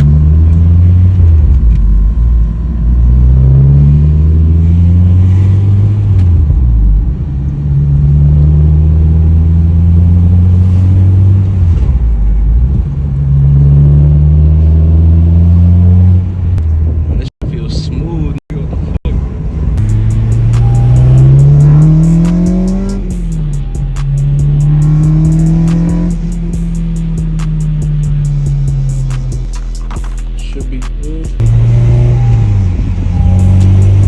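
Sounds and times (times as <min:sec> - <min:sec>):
bass-heavy music: 0:00.0 - 0:17.6, 0:18.6 - 0:34.0.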